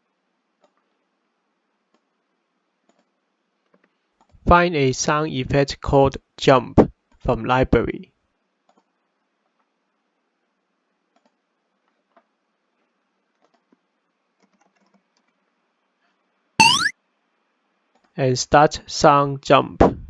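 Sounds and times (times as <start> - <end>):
cartoon jump sound effect: 16.6 - 16.9.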